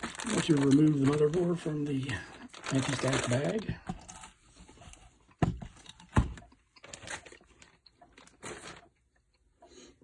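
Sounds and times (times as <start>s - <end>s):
plastic bag crinkling: 0.0s - 4.4s, 6.7s - 9.0s.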